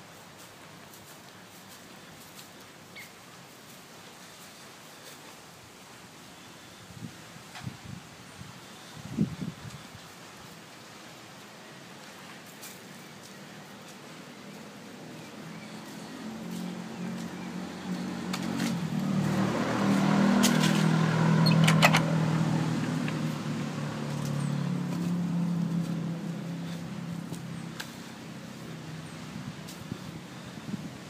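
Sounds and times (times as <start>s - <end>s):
vehicle engine hum passing: 12.1s - 31.0s
sharp clicks: 21.5s - 22.2s.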